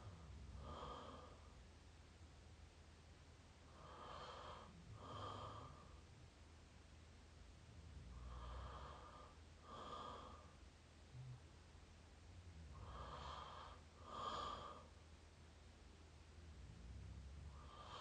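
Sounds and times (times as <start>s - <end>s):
person snoring softly: 0.0s - 1.6s, 3.7s - 6.1s, 7.8s - 11.5s, 12.5s - 15.0s, 16.6s - 18.0s.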